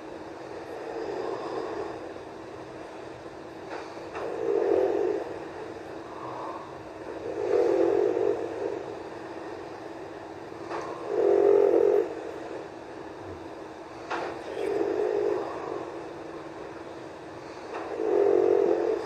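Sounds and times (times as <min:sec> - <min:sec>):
person snoring: 0:14.4 - 0:15.9.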